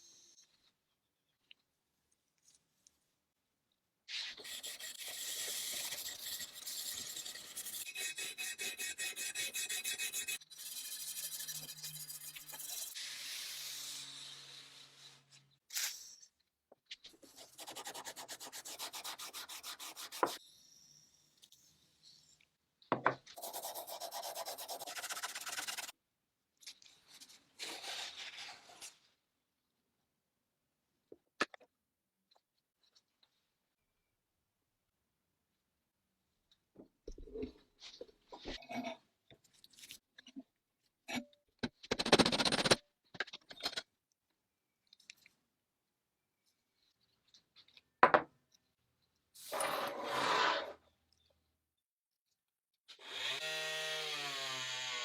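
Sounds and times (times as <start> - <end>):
hand sanding strokes: 4.4 - 12.8, 23.4 - 25.9.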